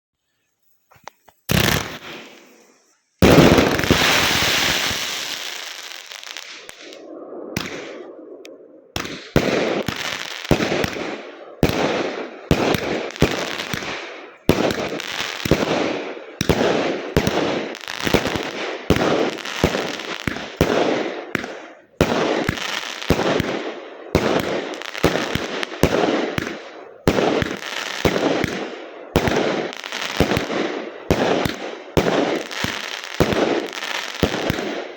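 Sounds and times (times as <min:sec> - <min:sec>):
fireworks bangs: 0:01.4 - 0:34.9
long loud firework burst: 0:01.5 - 0:08.1.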